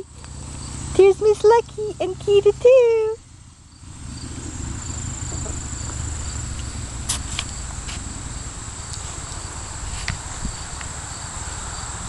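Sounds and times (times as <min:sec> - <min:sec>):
insects chirping: 0:00.0 - 0:12.0
low rumble: 0:03.2 - 0:10.8.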